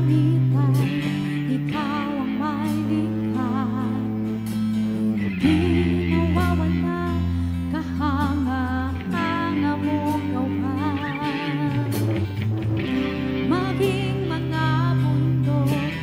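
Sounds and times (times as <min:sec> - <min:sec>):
guitars: 0:00.0 - 0:16.0
held bass notes: 0:00.0 - 0:16.0
melody line with vibrato: 0:00.0 - 0:16.0
band playing instrumental: 0:11.0 - 0:14.8.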